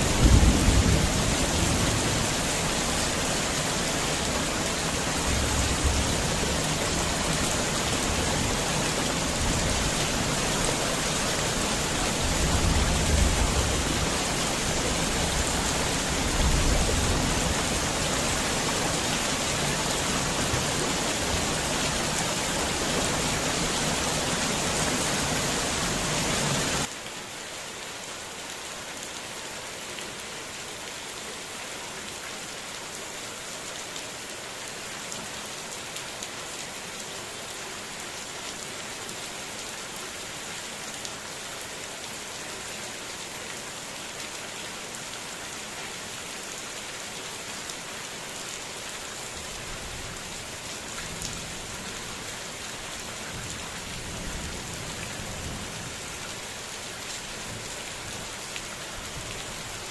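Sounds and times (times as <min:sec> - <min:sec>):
heavy rain pattering: 0:00.0 - 0:27.0, 0:49.2 - 0:59.9.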